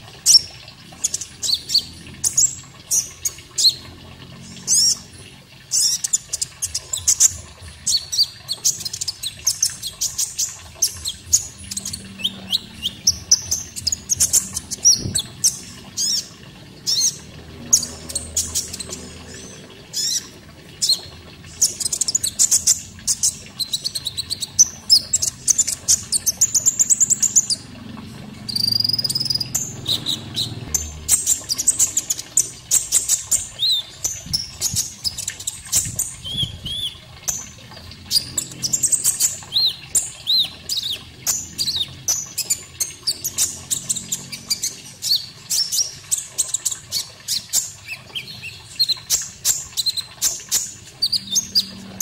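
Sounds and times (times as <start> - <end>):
faint running water: 0.0 - 52.0
songbird chirping and trilling: 28.4 - 35.4.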